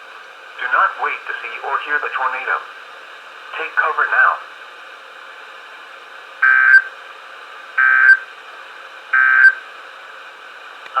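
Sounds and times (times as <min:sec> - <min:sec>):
radio hiss: 0:00.5 - 0:02.9, 0:03.5 - 0:04.5, 0:06.4 - 0:06.9
buzzing digital data bursts: 0:06.4 - 0:06.9, 0:07.8 - 0:08.2, 0:09.2 - 0:09.6.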